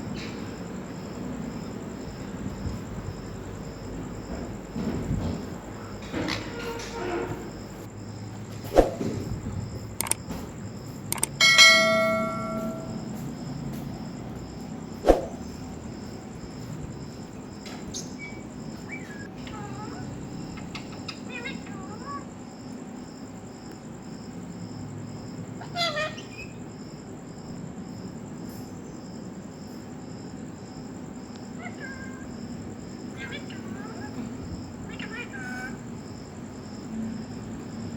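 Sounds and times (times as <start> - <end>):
insect chirping: 0.0 - 37.9
low background hum: 0.0 - 37.9
small clicks: 10.0 - 10.2, 11.1 - 11.4
metal object struck ringing: 11.4 - 13.0.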